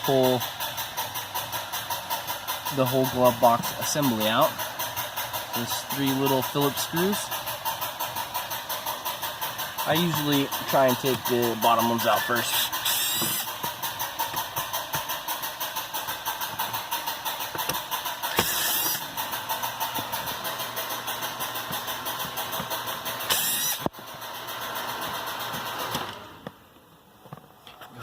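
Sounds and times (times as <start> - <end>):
cordless drill running: 7.2 - 15.5, 16.1 - 26.0.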